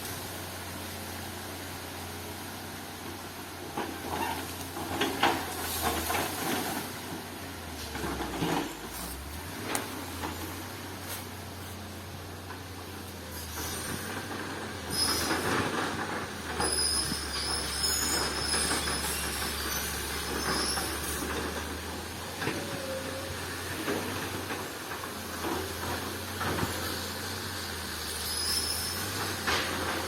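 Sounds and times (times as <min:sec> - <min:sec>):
diesel engine running: 0:00.0 - 0:30.0
clanks of tracks and steelwork: 0:02.9 - 0:30.0
high-pitched metal squeals: 0:13.3 - 0:21.8, 0:28.0 - 0:29.8.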